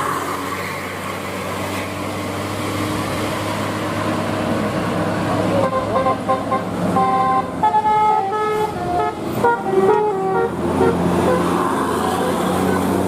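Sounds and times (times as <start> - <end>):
bus engine running: 0.0 - 13.0
musical bus horn tune: 5.6 - 11.6.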